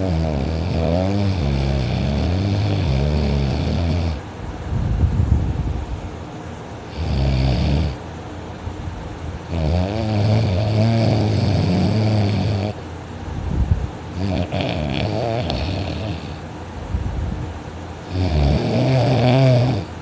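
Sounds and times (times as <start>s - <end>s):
person snoring heavily: 0.0s - 4.3s, 6.9s - 8.0s, 9.5s - 12.8s, 14.1s - 16.5s, 18.0s - 20.0s.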